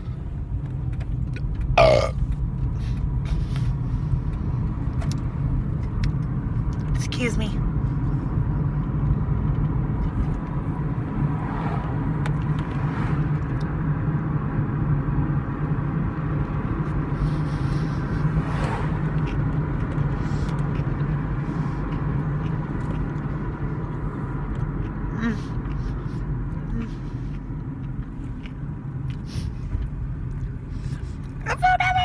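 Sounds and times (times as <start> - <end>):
car interior low rumble: 0.0 - 32.0.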